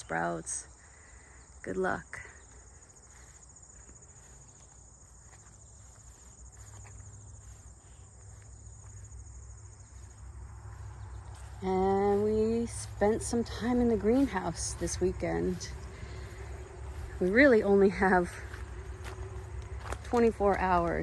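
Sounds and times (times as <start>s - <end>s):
insects trilling: 0.6s - 20.0s
low rumble: 9.8s - 20.8s.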